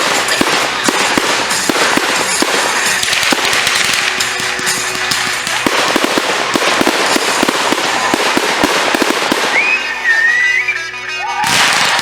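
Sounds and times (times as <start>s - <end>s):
fireworks crackling and popping: 0.0s - 12.0s
high whistle: 9.4s - 11.5s.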